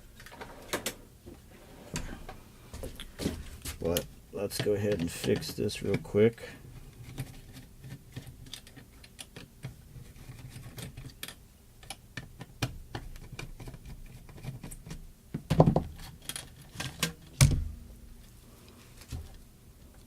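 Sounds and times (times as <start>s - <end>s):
tools clicking and tapping: 3.9s - 6.0s.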